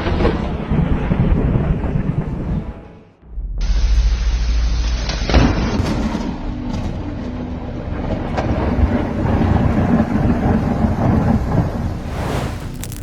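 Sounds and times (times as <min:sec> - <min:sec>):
thunder: 0:00.0 - 0:02.6.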